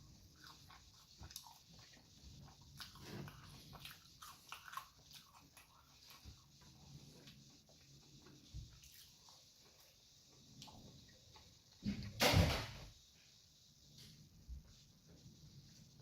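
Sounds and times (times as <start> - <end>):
person chewing food: 0.0 - 10.0.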